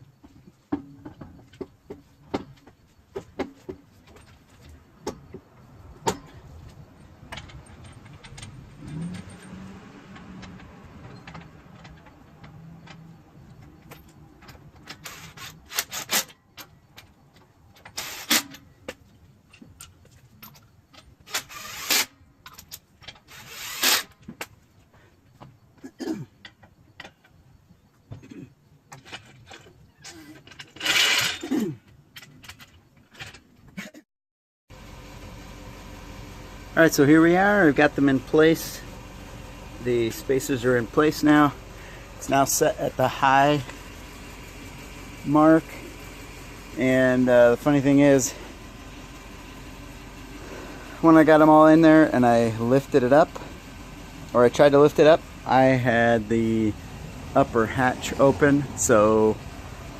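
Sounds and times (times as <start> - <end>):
tools and metal parts clanking: 0.2 - 34.0
low hum: 34.7 - 59.9.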